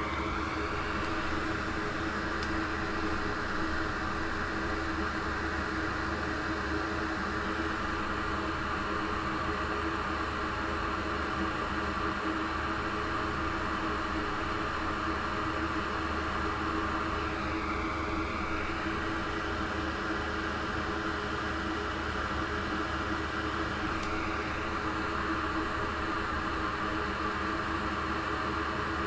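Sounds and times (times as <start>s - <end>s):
small fan whirring: 0.0s - 9.1s, 23.1s - 29.0s.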